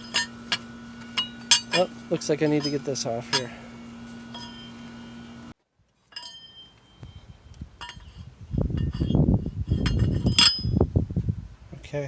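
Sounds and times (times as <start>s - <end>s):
metallic clinks of tools: 0.0s - 3.6s, 4.3s - 4.8s, 6.1s - 8.2s.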